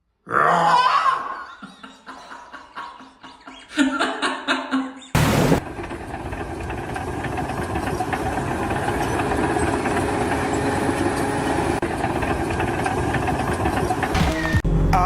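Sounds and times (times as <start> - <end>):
heavy engine running: 5.2 - 15.0.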